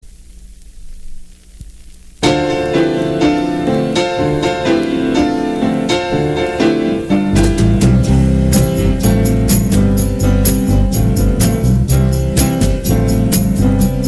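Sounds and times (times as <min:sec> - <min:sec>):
faint hiss: 0:00.0 - 0:14.0
low bass notes: 0:02.2 - 0:14.0
piano playing chords and melody: 0:02.2 - 0:14.0.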